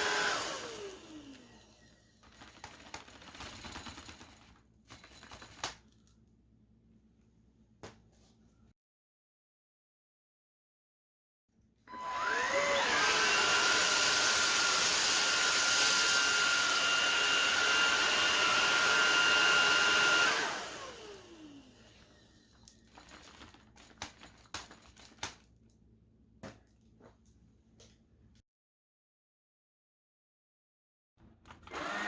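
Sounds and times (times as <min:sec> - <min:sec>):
vacuum cleaner motor whining: 0:00.0 - 0:03.0, 0:11.9 - 0:25.3, 0:31.6 - 0:32.0.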